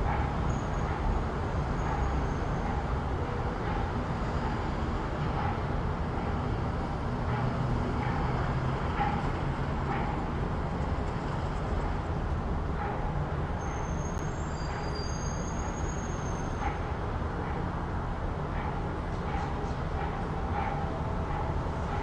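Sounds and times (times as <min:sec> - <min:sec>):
road traffic rumble: 0:00.0 - 0:22.0.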